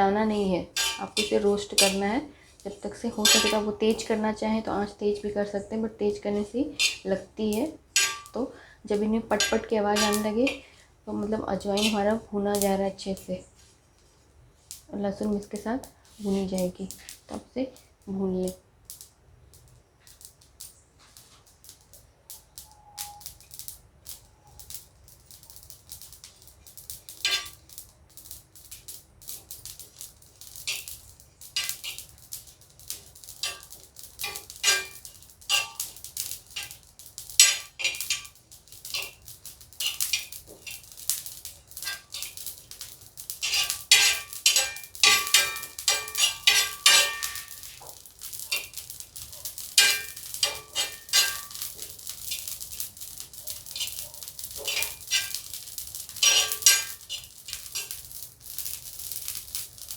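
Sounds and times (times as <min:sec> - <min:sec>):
seeds crackling and popping in a pan: 0:00.0 - 0:59.9
spatula scraping a pan: 0:00.7 - 0:02.2, 0:03.0 - 0:04.1, 0:06.3 - 0:10.7, 0:11.6 - 0:12.2, 0:27.2 - 0:27.6, 0:30.5 - 0:58.8.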